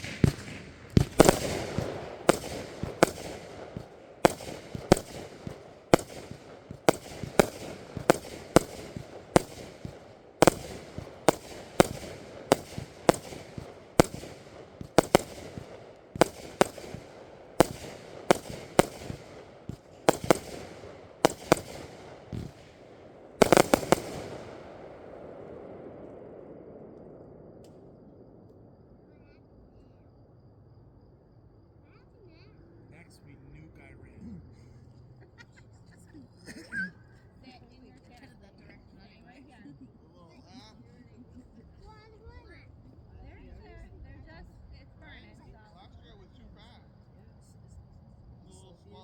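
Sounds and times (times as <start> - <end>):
fireworks bangs: 0.0 - 28.0.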